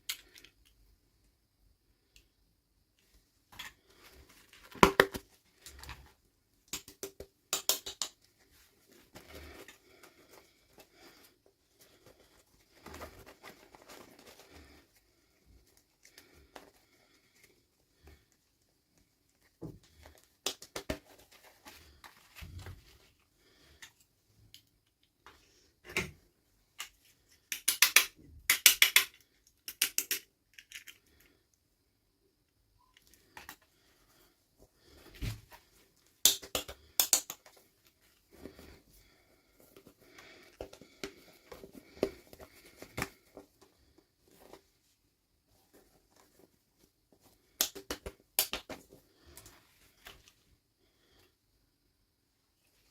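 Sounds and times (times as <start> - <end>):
plastic pieces clicking and tapping: 6.7 - 8.2, 26.8 - 31.2, 36.2 - 37.6, 47.6 - 48.8.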